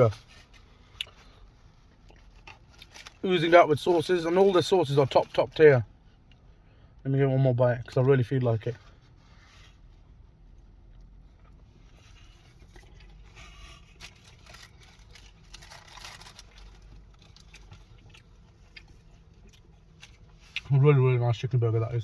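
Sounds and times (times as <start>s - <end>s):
person chewing food: 17.4s - 20.7s.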